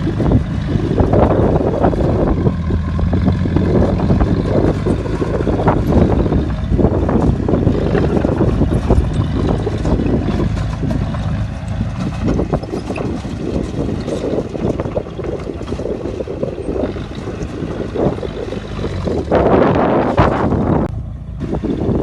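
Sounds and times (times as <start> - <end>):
bulldozer engine running: 0.0 - 22.0.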